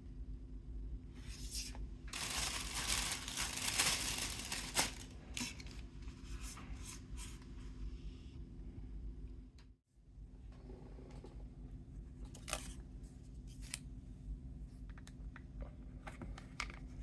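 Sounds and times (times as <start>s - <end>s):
plastic wrapper crinkling: 2.1s - 5.8s
plastic wrapper tearing: 2.2s - 5.6s
wrapper snapping: 2.2s - 5.6s.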